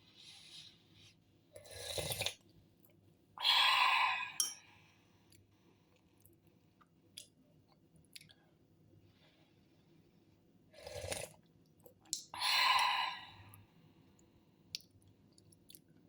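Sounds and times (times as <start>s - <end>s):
person slurping soup: 1.6s - 2.4s, 10.8s - 11.4s.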